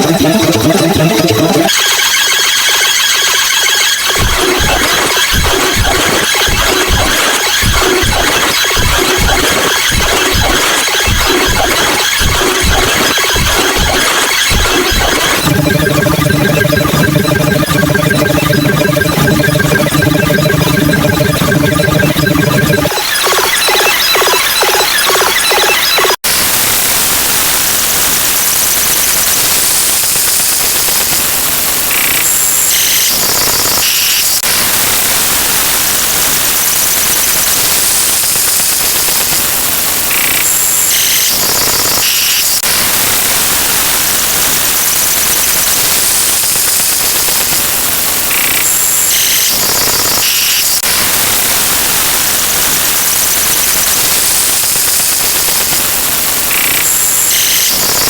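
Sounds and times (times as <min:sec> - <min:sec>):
short high beeping tones: 0:00.0 - 0:02.0, 0:12.2 - 0:23.6
harsh wall of noise: 0:00.0 - 0:24.0.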